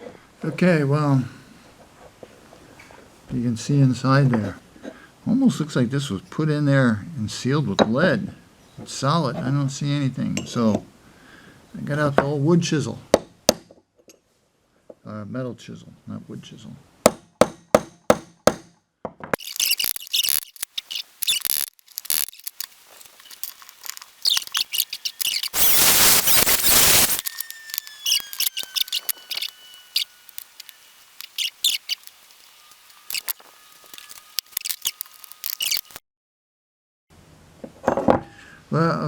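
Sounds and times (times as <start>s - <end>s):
metal tool clicks and scrapes: 19.4s - 25.6s, 26.6s - 36.0s
harsh burst of noise: 24.1s - 34.5s
faint high whine falling: 24.2s - 34.6s.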